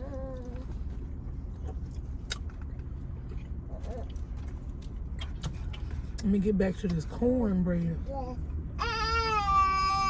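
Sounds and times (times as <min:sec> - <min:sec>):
chewing and wet mouth clicks: 0:01.5 - 0:06.3.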